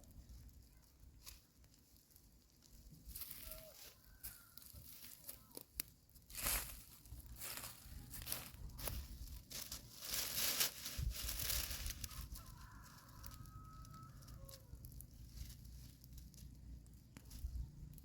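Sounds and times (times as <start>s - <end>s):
rustling and crinkling: 0.0s - 18.0s
faint drawn-out animal call: 3.2s - 5.6s.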